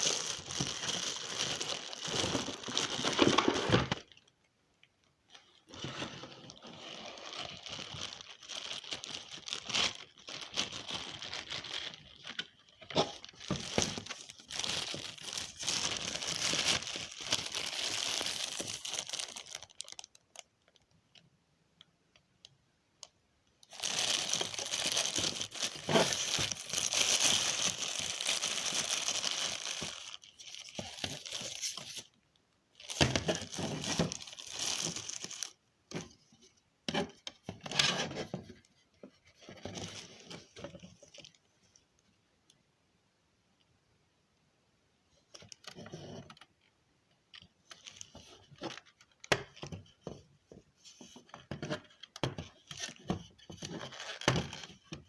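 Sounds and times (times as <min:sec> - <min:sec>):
packaging crinkling and tearing: 0:00.0 - 0:04.3, 0:05.4 - 0:20.8, 0:23.6 - 0:32.2, 0:32.8 - 0:35.6.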